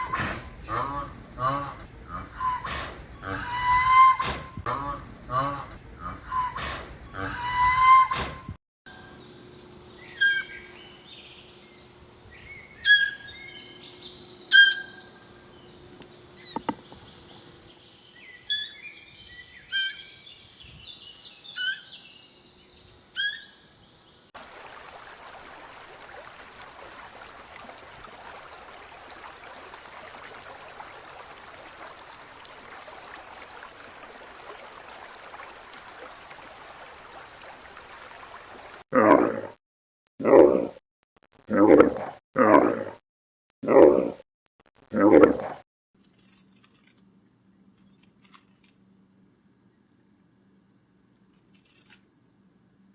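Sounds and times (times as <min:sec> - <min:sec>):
faint steady hum: 0:08.9 - 0:24.0
bird chirping: 0:08.9 - 0:24.3.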